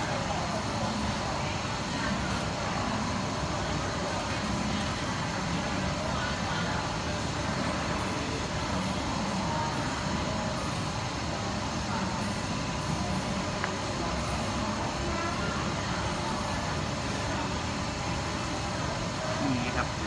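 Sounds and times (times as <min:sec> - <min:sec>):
faint indistinct voices: 0:00.0 - 0:20.0
steady background noise: 0:00.0 - 0:20.0.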